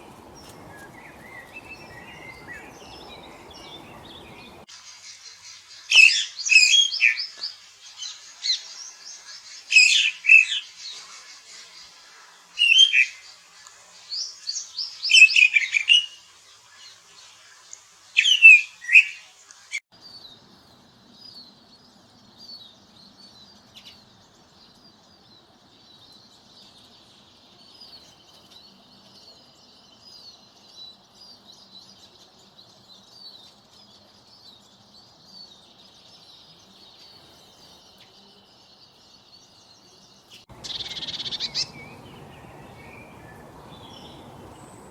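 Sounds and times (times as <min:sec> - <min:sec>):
faint low hum: 0:00.0 - 0:04.7, 0:40.5 - 0:44.9
birds chirping loudly: 0:00.0 - 0:13.4, 0:14.2 - 0:44.9
chorus of small chirps: 0:00.0 - 0:44.9.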